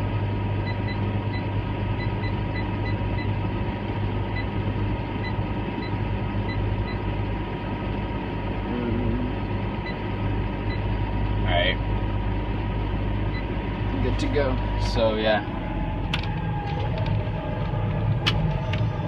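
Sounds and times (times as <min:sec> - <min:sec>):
tractor diesel engine idling: 0:00.0 - 0:19.0.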